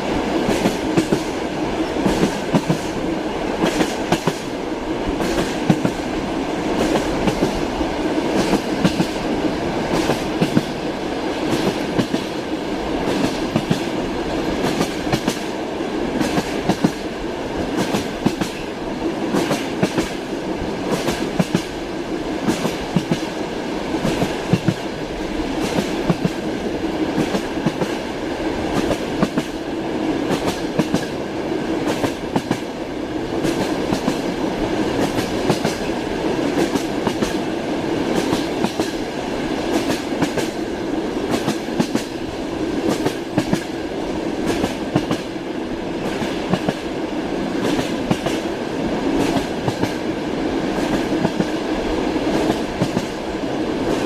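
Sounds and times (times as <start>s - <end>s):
train car rumble: 0.0s - 54.0s
train wheels clattering: 0.4s - 3.0s, 5.2s - 6.0s, 8.3s - 9.2s, 9.9s - 12.4s, 13.0s - 15.6s, 16.2s - 21.8s, 22.4s - 23.4s, 24.0s - 28.1s, 28.7s - 29.6s, 30.2s - 32.7s, 33.4s - 40.6s, 41.2s - 42.2s, 44.4s - 45.3s, 49.1s - 50.1s, 52.3s - 53.2s.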